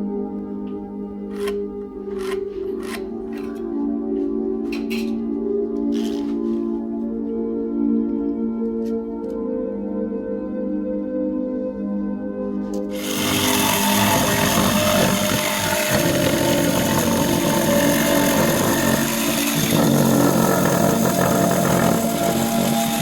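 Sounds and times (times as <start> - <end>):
power tool cutting wood: 5.9 - 6.4, 12.9 - 23.0.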